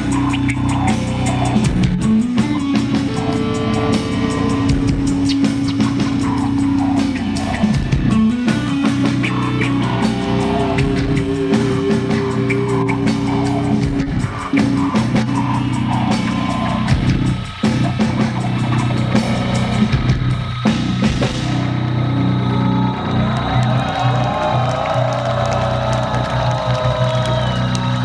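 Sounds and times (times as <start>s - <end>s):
drum kit steady beat: 0.0s - 21.9s
distorted electric guitars: 0.0s - 28.0s.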